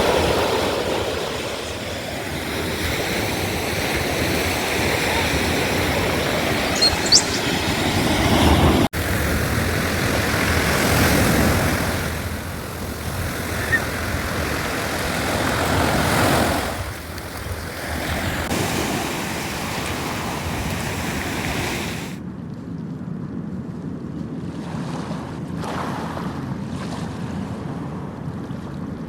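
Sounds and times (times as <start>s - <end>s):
sea waves rushing: 0.0s - 22.2s
wind: 0.0s - 29.0s.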